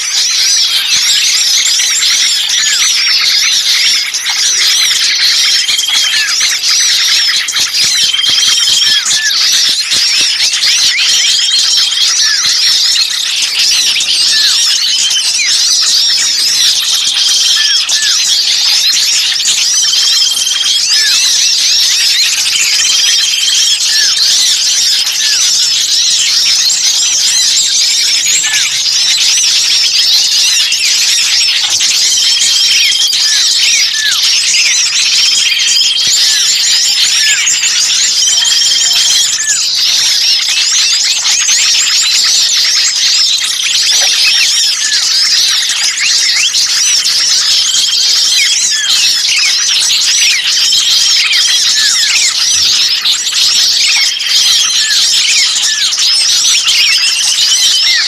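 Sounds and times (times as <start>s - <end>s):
songbirds chattering shrilly: 0.0s - 58.0s.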